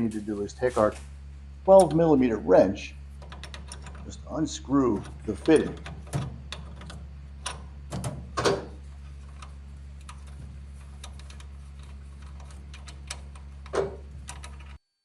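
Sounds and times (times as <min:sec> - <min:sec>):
steady low hum: 0:00.0 - 0:15.0
wrench clicking on metal: 0:09.2 - 0:14.8.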